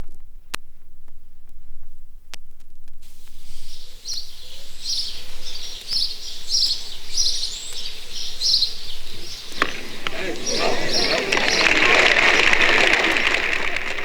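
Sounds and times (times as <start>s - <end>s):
bird chirping: 3.1s - 14.0s.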